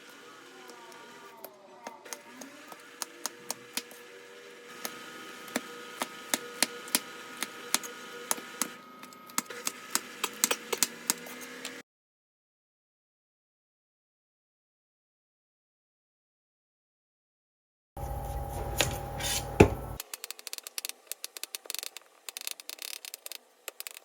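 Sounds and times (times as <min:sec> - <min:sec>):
knife chopping on wooden board: 0:18.2 - 0:20.0.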